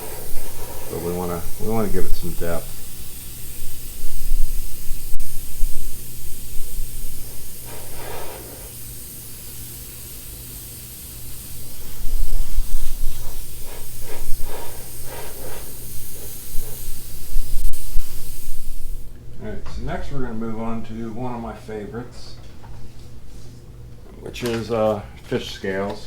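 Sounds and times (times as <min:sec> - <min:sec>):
airbrush spraying hiss: 0:00.0 - 0:19.1
steady low hum: 0:00.0 - 0:26.0.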